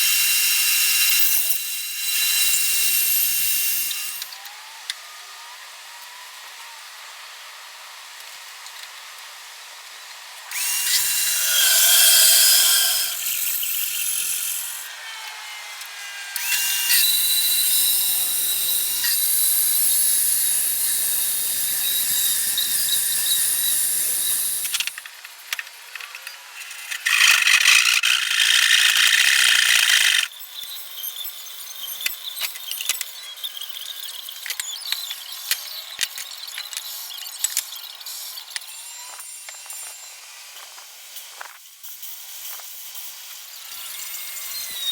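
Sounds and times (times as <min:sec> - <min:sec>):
power tools working wood: 0:00.0 - 0:08.2, 0:09.1 - 0:30.3, 0:43.5 - 0:44.9.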